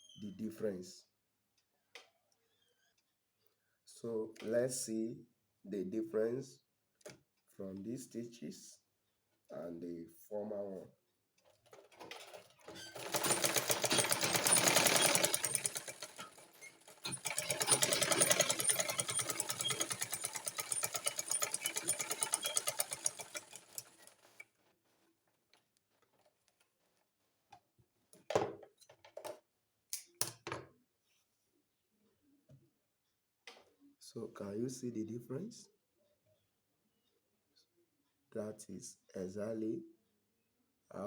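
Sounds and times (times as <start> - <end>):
sewing machine stitching fabric: 11.5 - 24.7.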